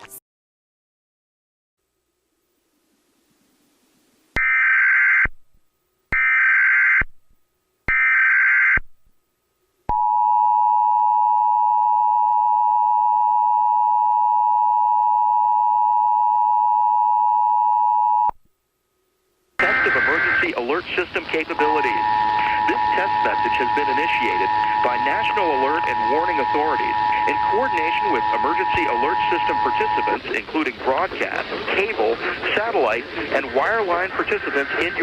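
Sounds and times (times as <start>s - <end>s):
digital data bursts: 19.6s - 35.0s
two-tone alert signal: 21.6s - 30.2s.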